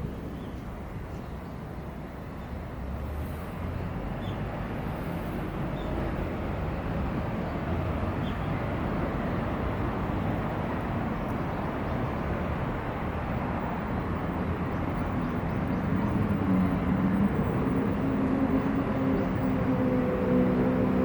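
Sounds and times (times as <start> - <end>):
vehicle running low rumble: 2.1 - 21.0
engine hum rising in pitch: 15.0 - 21.0.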